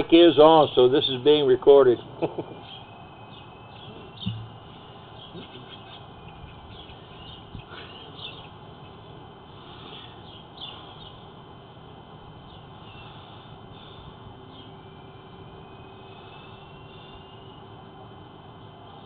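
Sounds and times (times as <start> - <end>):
birds chirping: 0.0 - 19.0
steady background noise: 0.0 - 19.0.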